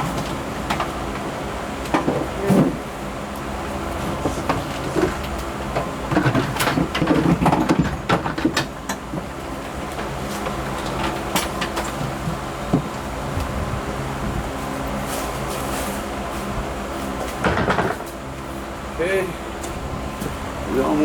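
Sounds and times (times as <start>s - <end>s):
car interior parts knocking and rattling: 0.0s - 2.9s, 3.6s - 13.1s, 17.4s - 18.3s.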